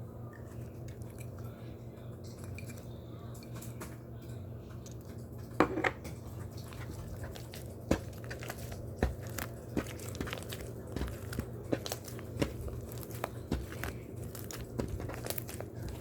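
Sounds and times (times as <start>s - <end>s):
low steady hum: 0.0s - 16.0s
foam crunching and crackling: 6.7s - 16.0s.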